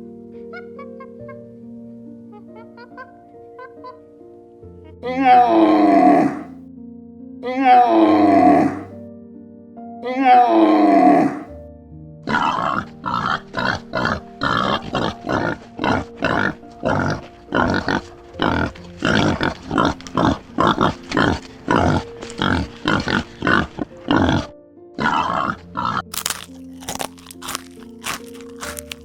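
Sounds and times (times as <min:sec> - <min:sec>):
background music: 0:00.0 - 0:29.0
animal rapid repeated calls: 0:07.5 - 0:08.9, 0:10.1 - 0:11.5, 0:12.3 - 0:28.8.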